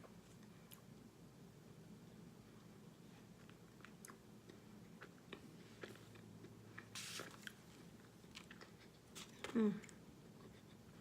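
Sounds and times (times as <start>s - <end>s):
crunching and chewing: 3.2s - 10.8s.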